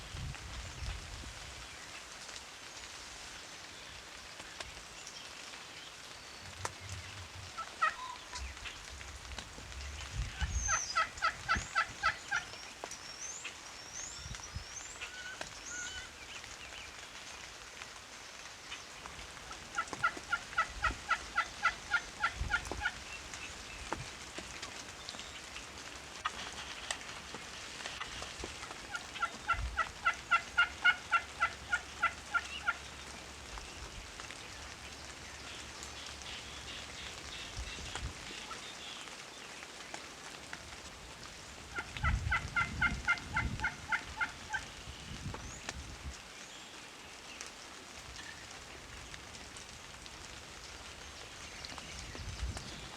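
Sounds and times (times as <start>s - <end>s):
wild turkey yelping: 7.5s - 8.5s, 10.3s - 12.5s, 15.0s - 16.1s, 19.5s - 23.0s, 27.9s - 33.0s, 41.7s - 44.7s.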